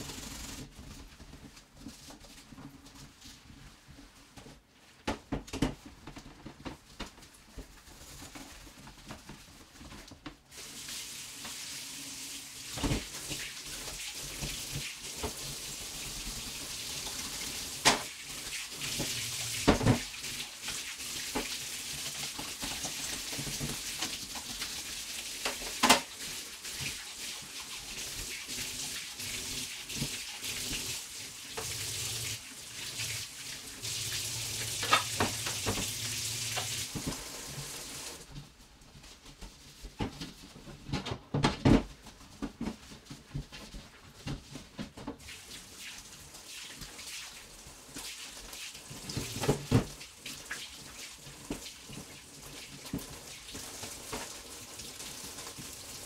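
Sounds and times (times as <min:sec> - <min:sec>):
tap water running into sink: 0:10.5 - 0:38.3, 0:45.2 - 0:56.0.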